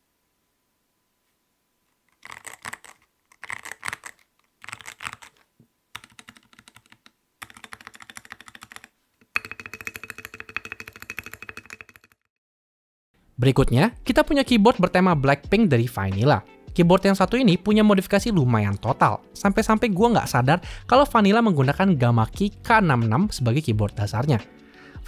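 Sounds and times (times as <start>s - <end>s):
typing on mechanical keyboard: 2.2s - 12.2s.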